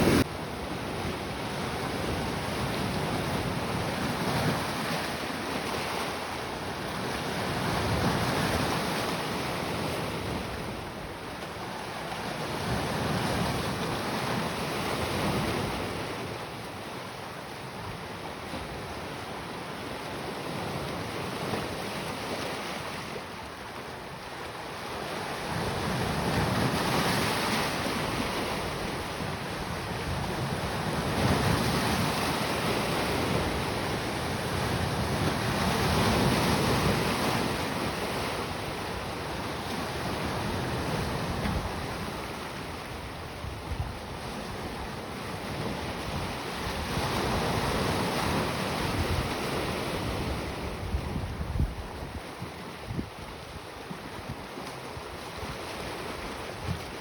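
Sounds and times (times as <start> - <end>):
sea waves breaking on shore: 0.0 - 57.0
wind buffeting microphone: 50.0 - 54.4.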